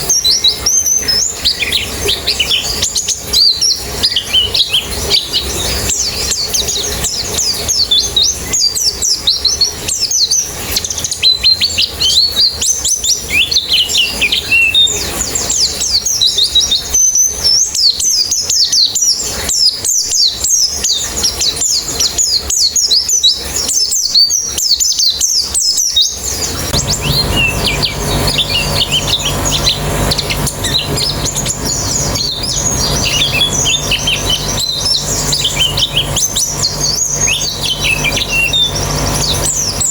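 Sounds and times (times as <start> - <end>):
small birds chirping and twittering: 0.0 - 39.9
steady low hum: 26.4 - 39.9.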